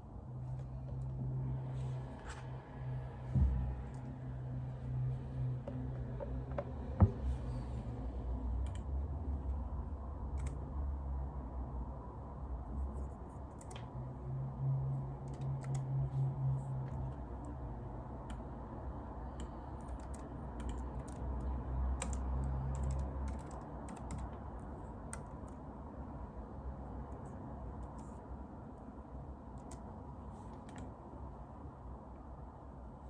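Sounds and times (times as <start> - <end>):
low steady hum: 0.0 - 33.0
typing on computer keyboard: 10.3 - 10.6, 13.5 - 13.9, 15.2 - 16.0, 19.3 - 25.6.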